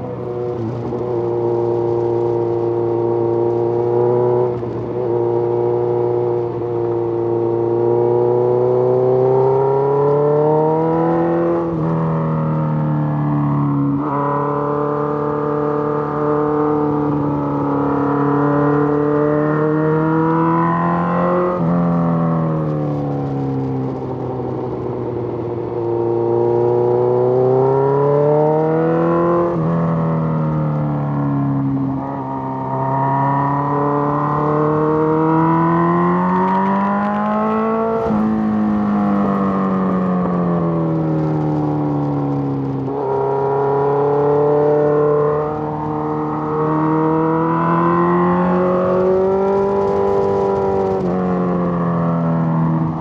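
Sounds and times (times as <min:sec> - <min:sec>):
motorcycle engine running: 0:36.1 - 0:44.5, 0:47.8 - 0:53.0.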